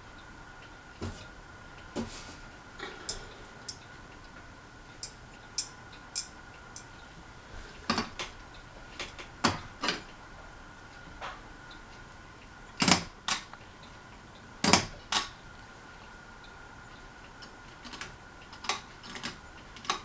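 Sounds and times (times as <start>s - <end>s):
ceiling fan hum: 0.0s - 20.0s
light clinks and ticks: 3.0s - 7.1s.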